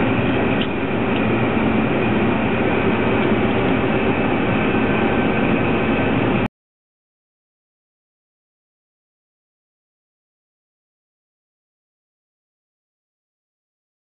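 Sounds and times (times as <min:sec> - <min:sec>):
combine harvester droning: 0:00.0 - 0:06.5.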